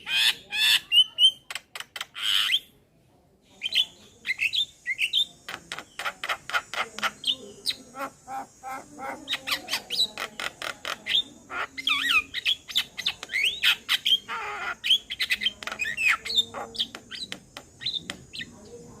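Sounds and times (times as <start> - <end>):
myna calling: 3.6 - 18.7.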